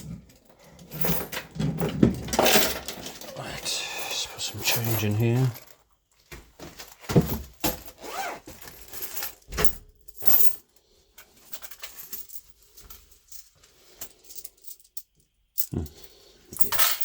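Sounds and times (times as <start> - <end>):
coins clinking into container: 4.0 - 5.6, 16.6 - 17.0.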